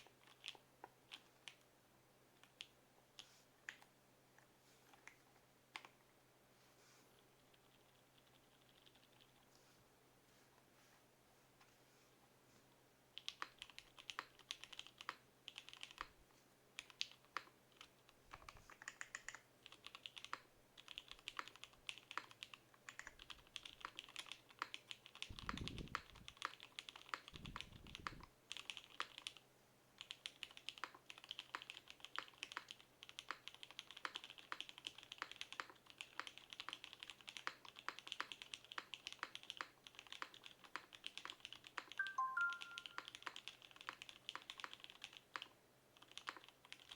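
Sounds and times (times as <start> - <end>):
mechanical keyboard typing: 13.2 - 16.2, 16.8 - 29.4, 30.0 - 46.9.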